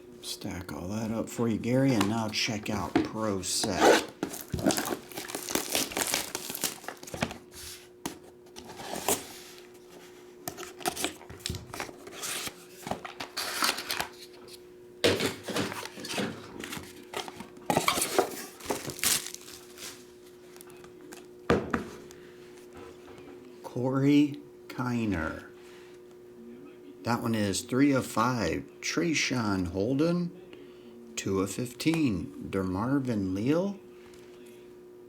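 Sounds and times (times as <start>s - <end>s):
faint steady hum: 0.0s - 35.0s
cardboard and cards clacking: 1.9s - 7.4s
wrappers crinkling and tearing: 3.6s - 7.8s, 16.9s - 20.8s.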